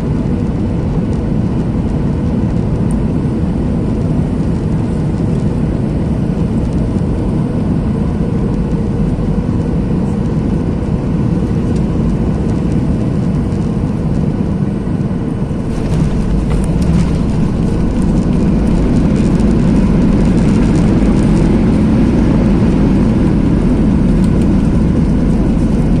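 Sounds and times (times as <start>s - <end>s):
jet engines rushing: 0.0s - 26.0s
rattling: 15.6s - 21.4s.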